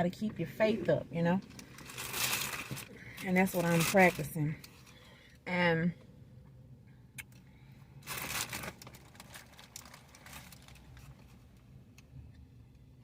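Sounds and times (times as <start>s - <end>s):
paper wrapper crinkling: 1.5s - 4.3s, 8.0s - 11.3s.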